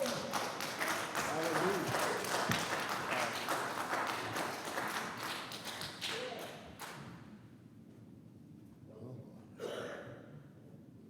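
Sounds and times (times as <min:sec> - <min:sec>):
congregation applauding: 0:00.0 - 0:07.0.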